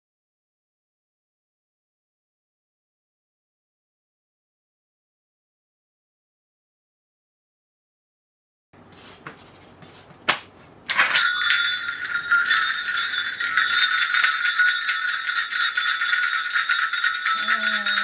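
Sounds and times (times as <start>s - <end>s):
soft handling sounds: 8.9s - 11.5s
ritual bells jingling: 10.9s - 18.0s.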